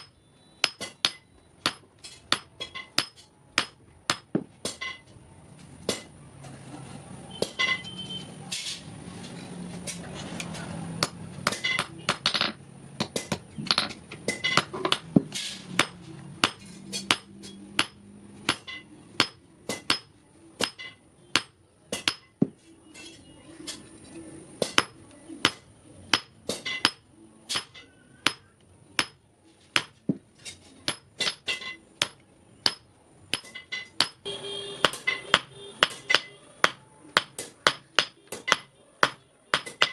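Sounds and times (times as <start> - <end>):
hammer striking steel on anvil: 0.0 - 5.0, 11.0 - 22.4, 24.6 - 29.2, 30.9 - 39.9.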